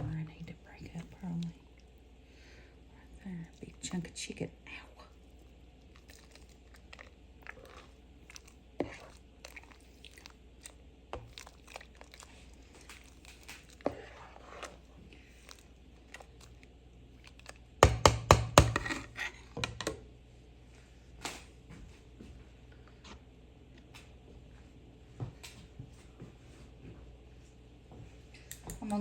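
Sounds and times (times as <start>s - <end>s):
utensil scraping in a pot: 6.0s - 10.4s, 11.1s - 16.6s, 18.6s - 19.5s.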